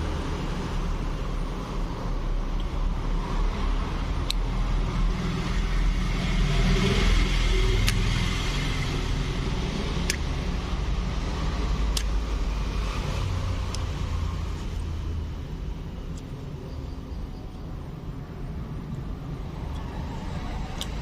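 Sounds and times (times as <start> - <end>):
motor vehicle rumble: 0.0 - 21.0
sharp clicks: 7.8 - 8.2, 10.0 - 10.3, 11.8 - 12.2.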